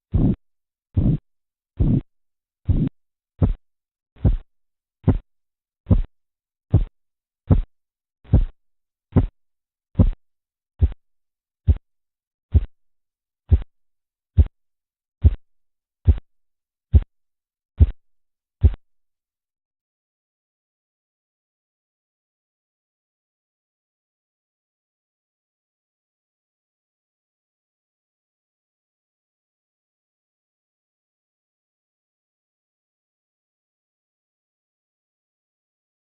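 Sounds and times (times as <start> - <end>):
pulse thumps through stethoscope: 0.1 - 0.4, 1.0 - 1.2, 1.8 - 3.6, 4.2 - 5.3, 5.9 - 6.1, 6.7 - 6.9, 7.5 - 7.7, 8.3 - 9.4, 10.0 - 10.2, 10.8 - 11.0, 11.7 - 11.9, 12.5 - 12.8, 13.5 - 13.7, 14.4 - 14.6, 15.2 - 16.3, 16.9 - 17.1, 17.8 - 18.0, 18.6 - 18.8.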